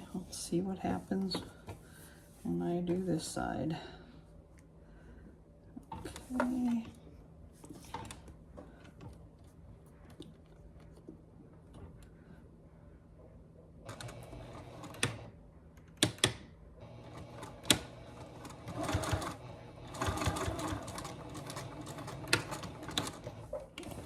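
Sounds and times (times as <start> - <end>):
sewing machine stitching: 13.9 - 15.3, 16.8 - 24.0.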